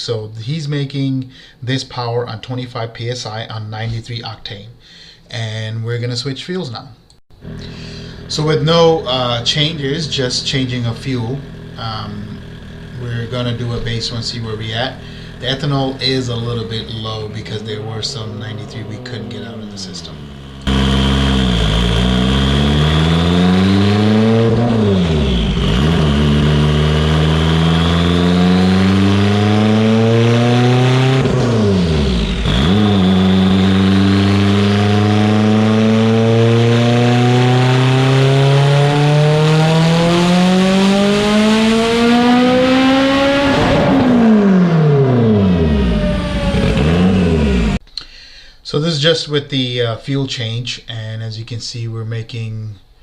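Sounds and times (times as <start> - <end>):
car engine revving on dyno: 7.4 - 47.8.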